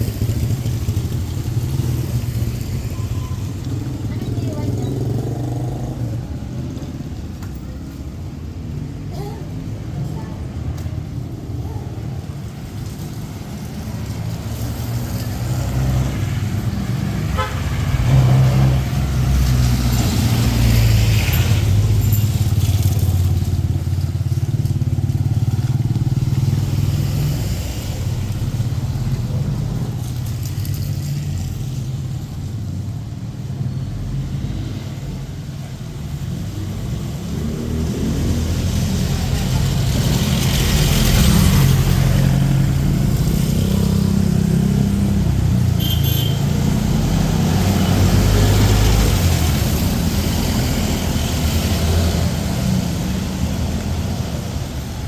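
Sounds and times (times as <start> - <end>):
tyre hiss of passing vehicles: 0.0 - 10.0, 10.6 - 55.0.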